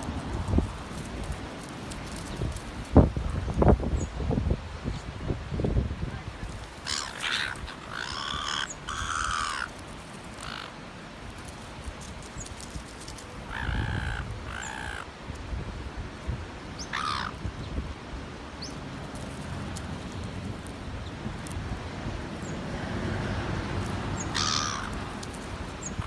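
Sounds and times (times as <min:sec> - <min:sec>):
gulls squawking: 0:06.6 - 0:10.8, 0:13.4 - 0:15.1, 0:16.8 - 0:17.4, 0:24.1 - 0:26.0.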